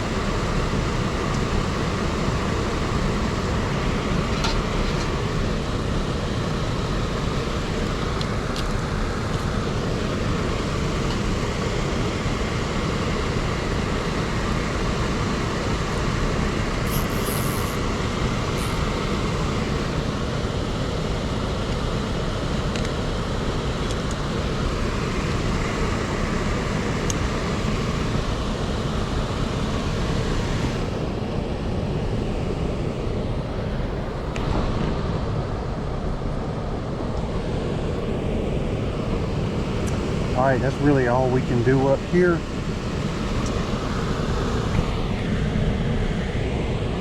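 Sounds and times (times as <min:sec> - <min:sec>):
air handler blower running: 0:00.0 - 0:47.0
high hiss: 0:16.7 - 0:20.0.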